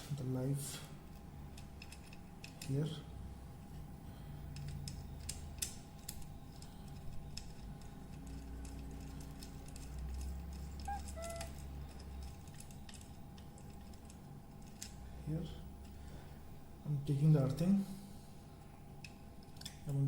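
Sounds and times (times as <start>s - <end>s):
low steady hum: 0.0s - 20.0s
small metallic clicks: 1.5s - 2.7s, 4.5s - 15.0s.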